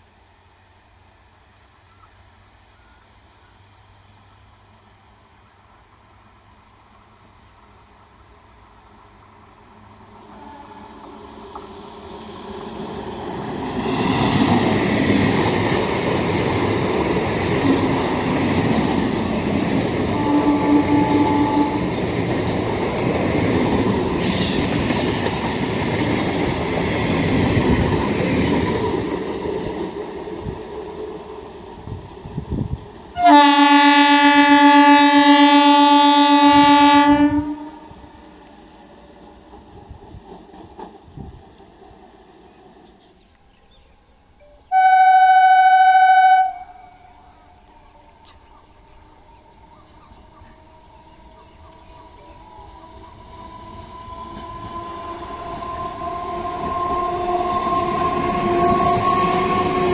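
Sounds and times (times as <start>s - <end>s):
train horn: 10.2s - 11.6s, 19.6s - 22.6s, 33.1s - 38.1s, 44.6s - 48.3s, 49.0s - 59.9s.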